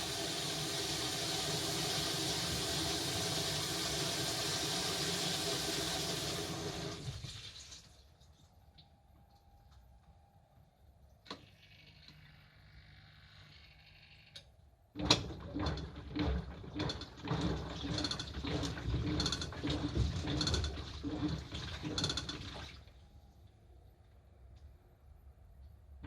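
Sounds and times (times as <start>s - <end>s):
washing machine rattling clatter: 15.0s - 22.8s.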